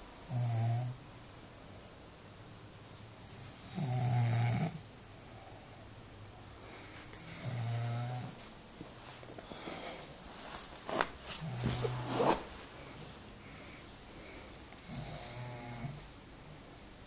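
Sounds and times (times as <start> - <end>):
person snoring: 7.2 - 8.4, 14.8 - 16.0.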